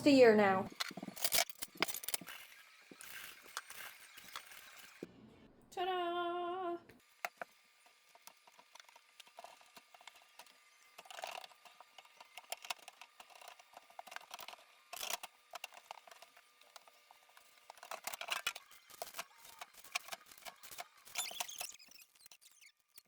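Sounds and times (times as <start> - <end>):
plastic containers clicking and rustling: 8.2 - 22.5.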